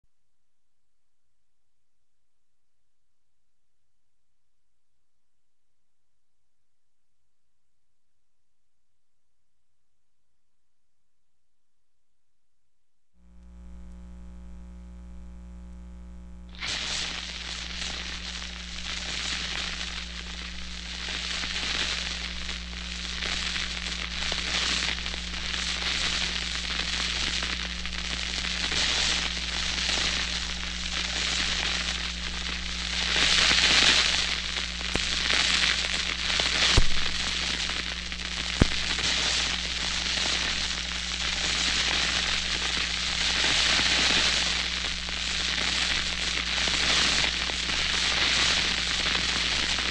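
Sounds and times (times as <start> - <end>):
steady low hum: 13.2 - 16.5
fuse sizzling and crackling: 13.2 - 49.9
sharp pops: 31.6 - 40.6.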